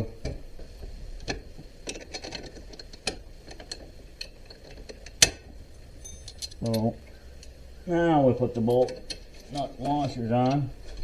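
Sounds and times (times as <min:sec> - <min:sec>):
metal bolts clicking: 0:01.9 - 0:07.7, 0:08.4 - 0:11.0
sharp metal clack: 0:05.2 - 0:06.9.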